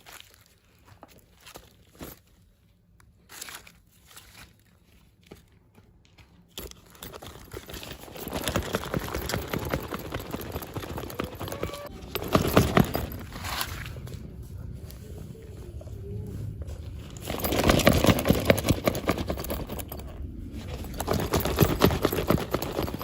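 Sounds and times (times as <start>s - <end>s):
plastic and cardboard rustling: 6.7s - 23.0s.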